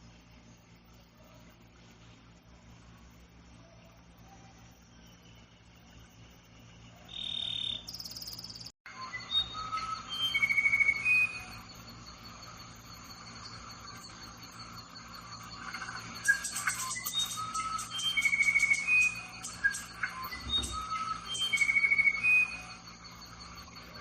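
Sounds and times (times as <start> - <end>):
high insect trill: 0.0 - 24.0
songbird whistling: 7.0 - 24.0.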